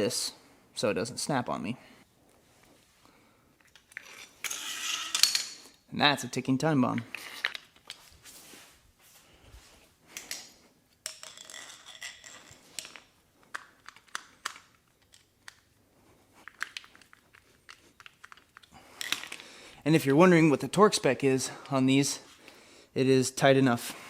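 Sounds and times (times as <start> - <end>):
clicks and knocks of parts: 3.6 - 5.8, 6.9 - 8.1, 10.1 - 15.7, 16.4 - 19.8.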